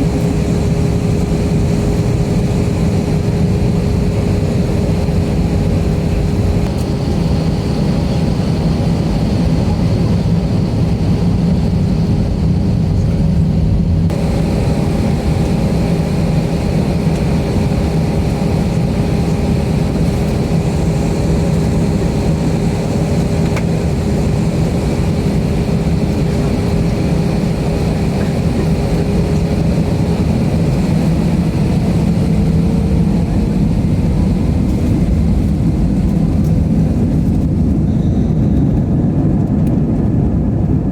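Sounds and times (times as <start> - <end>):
jet engine drone in cabin: 0.0 - 40.9.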